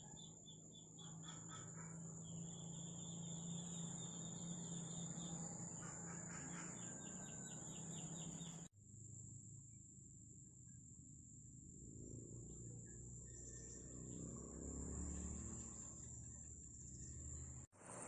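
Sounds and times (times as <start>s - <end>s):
birds chirping: 0.0s - 8.7s
insect trill: 0.0s - 10.1s, 11.2s - 17.6s.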